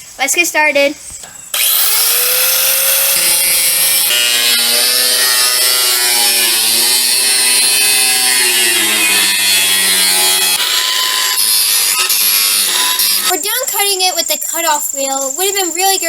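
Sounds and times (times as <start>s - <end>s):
cutoff wheel grinding steel: 1.5s - 13.3s.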